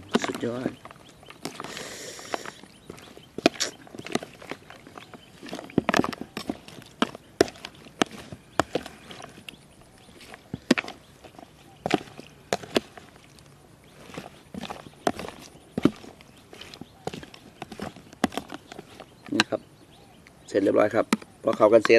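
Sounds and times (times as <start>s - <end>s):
utensils clacking against a bowl: 0.0s - 13.2s.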